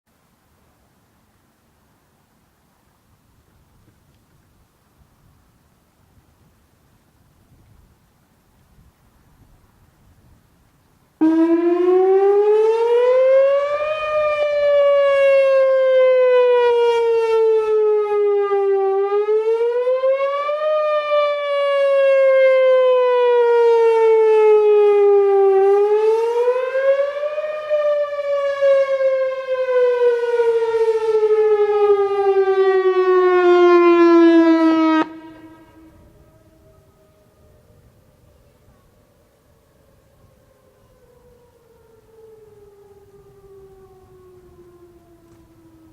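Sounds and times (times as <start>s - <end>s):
warning siren wailing: 11.2s - 45.9s.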